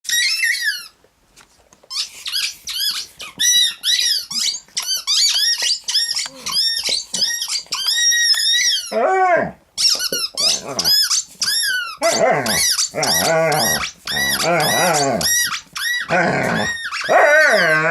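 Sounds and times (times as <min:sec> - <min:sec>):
squeaky toy squeaking: 0:00.1 - 0:01.0, 0:01.9 - 0:08.9, 0:09.8 - 0:17.8.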